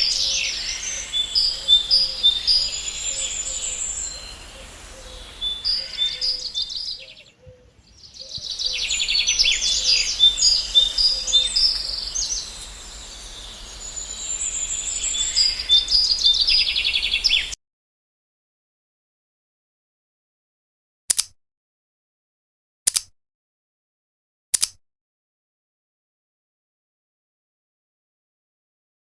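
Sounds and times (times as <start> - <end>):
birds chirping and trilling: 0.0 - 17.6.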